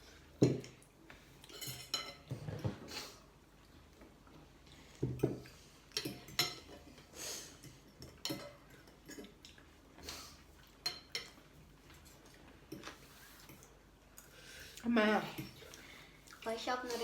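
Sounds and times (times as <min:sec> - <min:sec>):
spoons and bowls clinking: 0:01.5 - 0:02.3.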